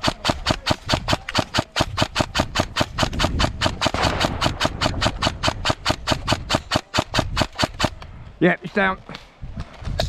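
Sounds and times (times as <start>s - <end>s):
airsoft gun firing rapidly: 0.0s - 8.0s.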